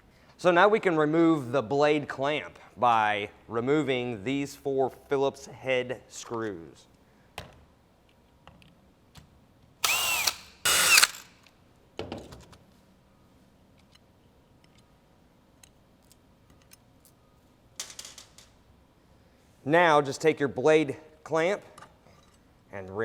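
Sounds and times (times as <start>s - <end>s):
cordless drill whirring: 9.8s - 11.4s.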